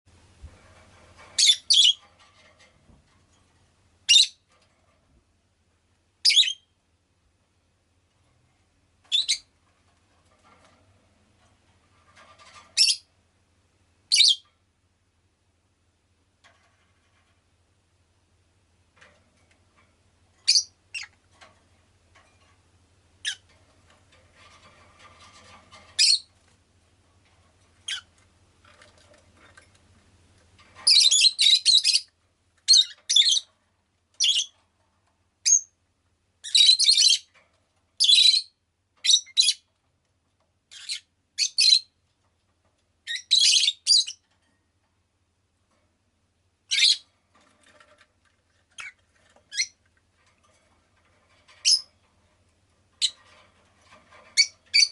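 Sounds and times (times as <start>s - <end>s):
lovebird chirping and squawking: 1.4s - 2.0s, 4.1s - 4.4s, 6.2s - 6.7s, 9.1s - 9.5s, 12.8s - 13.1s, 14.1s - 14.5s, 20.4s - 21.1s, 23.2s - 23.5s, 26.0s - 26.3s, 27.8s - 28.1s, 30.8s - 32.1s, 32.7s - 33.5s, 34.2s - 34.5s, 35.4s - 35.7s, 36.4s - 37.3s, 38.0s - 39.6s, 40.7s - 41.9s, 43.1s - 44.2s, 46.7s - 47.0s, 48.8s - 49.8s, 51.6s - 51.9s, 54.3s - 54.9s.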